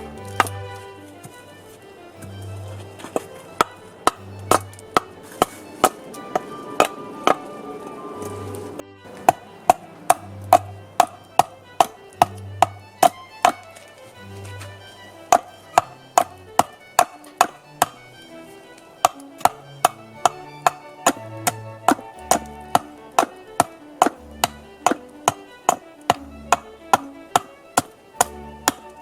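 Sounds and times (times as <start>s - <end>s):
soft music with violin: 0.0s - 29.0s
hammer striking wood: 2.2s - 7.4s, 9.1s - 13.8s, 14.5s - 18.0s, 19.0s - 29.0s.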